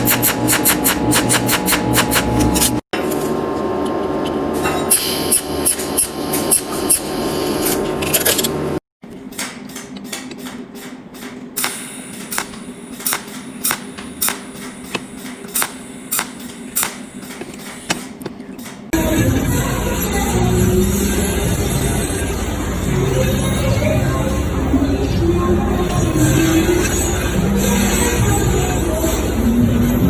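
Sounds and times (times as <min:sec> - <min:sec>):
sharp taps and clicks: 0:00.0 - 0:02.7
steady hum: 0:00.0 - 0:02.8.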